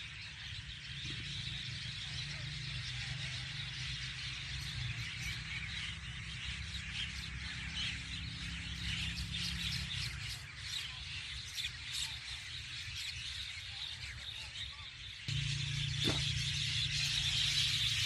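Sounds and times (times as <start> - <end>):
myna birds chirping: 0.0 - 18.0
steady low hum: 15.2 - 18.0.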